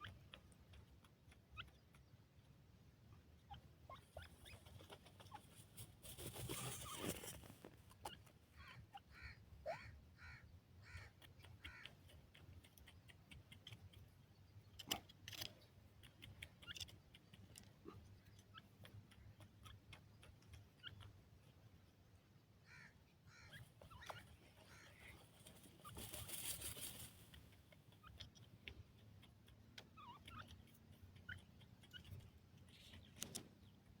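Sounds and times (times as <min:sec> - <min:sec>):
bird chick chirping: 0:22.6 - 0:34.0.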